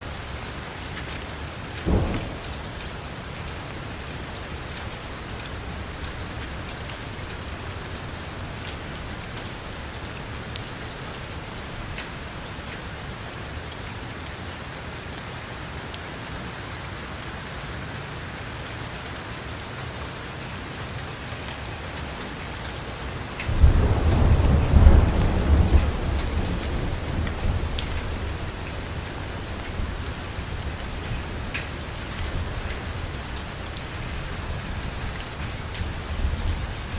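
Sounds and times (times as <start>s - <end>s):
heavy rain on a metal roof: 0.0s - 36.9s
thunderclap: 1.8s - 4.9s, 23.3s - 31.4s
rolling thunder rumble: 1.8s - 9.2s, 23.2s - 36.9s.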